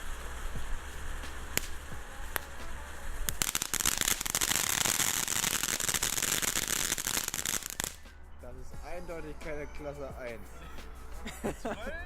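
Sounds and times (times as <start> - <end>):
sharp cracks: 0.0 - 8.2
ground fountain firework hissing: 0.0 - 11.8.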